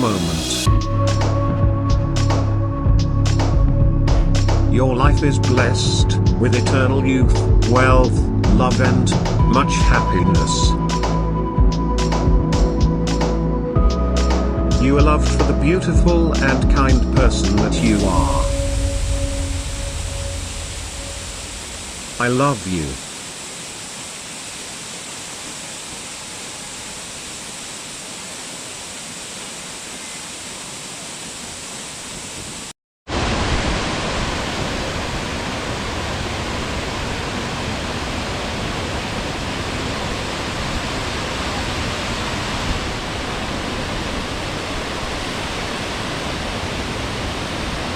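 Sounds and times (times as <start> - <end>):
waterfall rushing: 0.0 - 1.4, 17.4 - 47.9.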